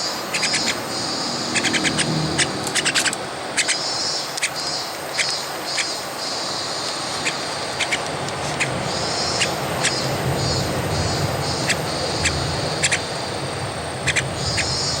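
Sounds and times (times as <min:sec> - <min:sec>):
high hiss: 0:00.0 - 0:15.0
bird chirps: 0:00.3 - 0:05.9.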